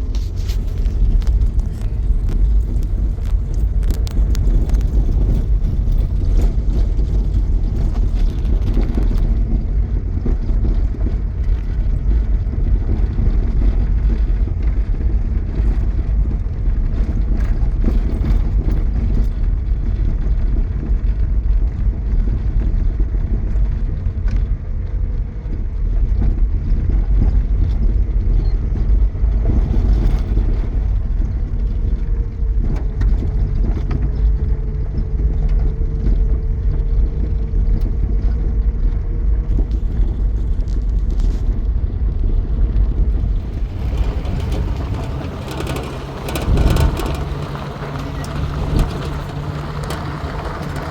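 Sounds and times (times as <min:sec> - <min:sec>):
road noise: 0:00.0 - 0:16.2, 0:39.2 - 0:50.9
vehicle engine rumble: 0:00.0 - 0:50.9.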